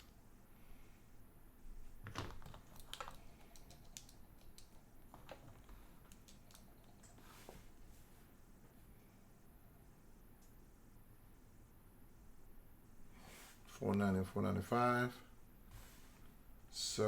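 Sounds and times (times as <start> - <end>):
faint clicks and light taps: 2.1 - 7.2.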